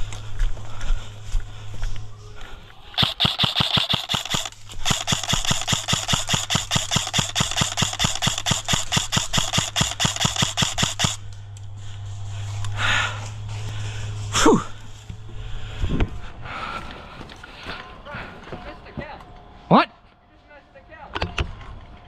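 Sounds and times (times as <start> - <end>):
airsoft gun rapid firing: 3.0 - 11.2.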